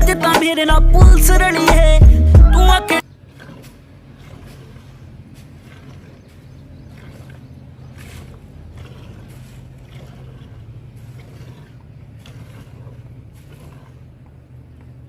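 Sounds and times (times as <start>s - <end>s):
low mechanical hum: 0.0s - 15.0s.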